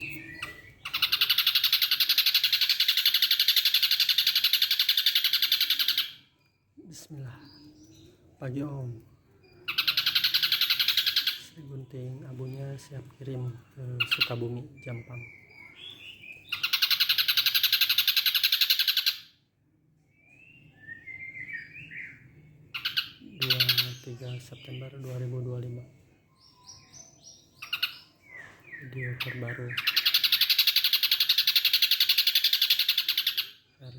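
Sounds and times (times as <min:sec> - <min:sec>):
bird rapid rattling trill: 0:00.8 - 0:06.3, 0:09.6 - 0:11.5, 0:16.5 - 0:19.3, 0:29.8 - 0:33.6
bird whistled gliding notes: 0:20.3 - 0:22.3.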